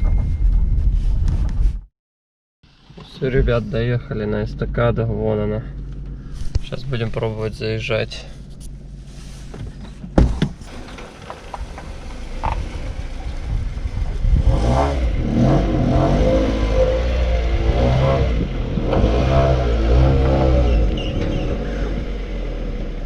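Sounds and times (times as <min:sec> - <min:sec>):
car engine revving: 0:10.7 - 0:23.0.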